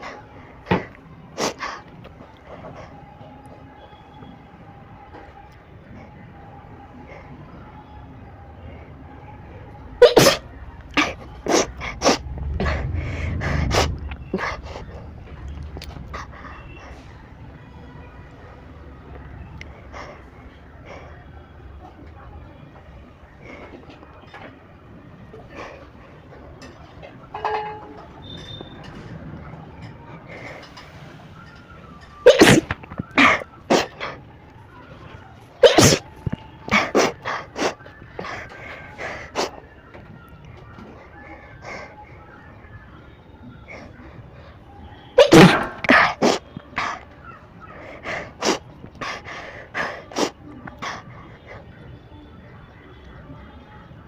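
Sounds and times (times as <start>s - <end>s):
breathy noises: 0.0s - 3.5s, 8.6s - 18.4s, 19.5s - 22.0s, 23.1s - 27.2s, 30.0s - 42.4s, 43.4s - 52.2s
person sneezing: 10.0s - 10.4s, 32.3s - 33.9s, 35.6s - 36.0s, 45.2s - 46.4s.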